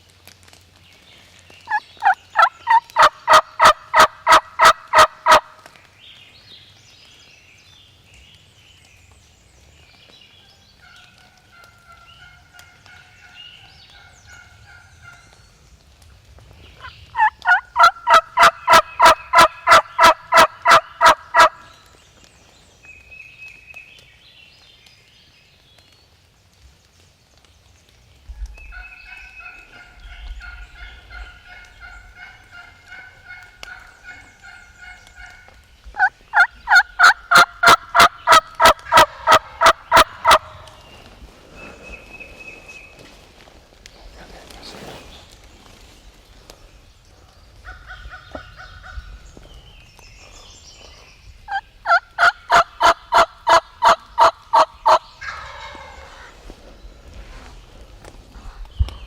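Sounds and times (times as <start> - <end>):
turkey yelping: 1.7 - 5.4, 17.2 - 21.5, 36.0 - 40.6, 51.9 - 55.9
soft turkey calling: 1.7 - 5.5, 16.8 - 21.7, 28.7 - 40.8, 51.5 - 56.4.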